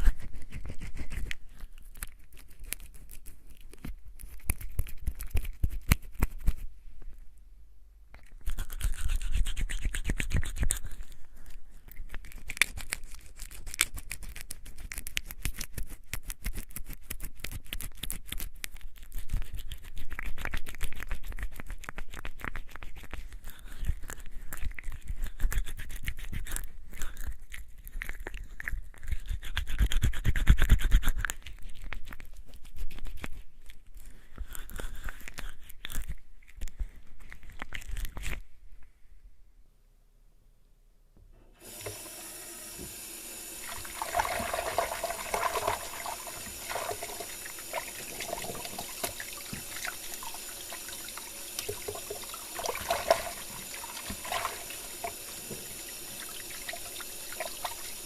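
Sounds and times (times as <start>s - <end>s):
hands rubbing with soap: 0.0s - 6.8s, 8.2s - 26.8s, 41.6s - 58.0s.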